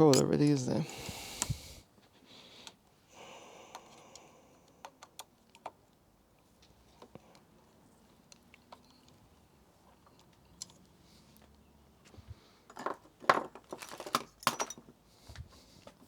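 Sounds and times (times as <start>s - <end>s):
bike parts clicking and rattling: 12.7s - 15.0s.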